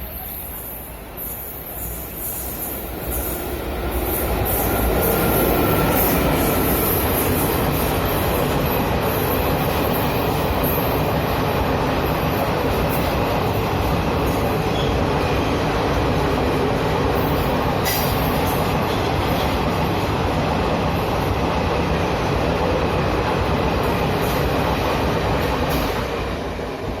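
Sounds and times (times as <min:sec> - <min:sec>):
train wheels rushing on rails: 0:00.0 - 0:27.0
train clicks and rattles: 0:01.4 - 0:27.0.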